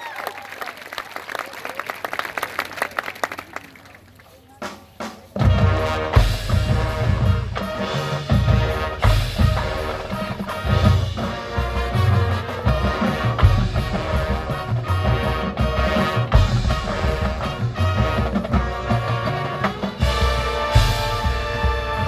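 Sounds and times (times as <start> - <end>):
marching band playing: 4.4 - 22.0.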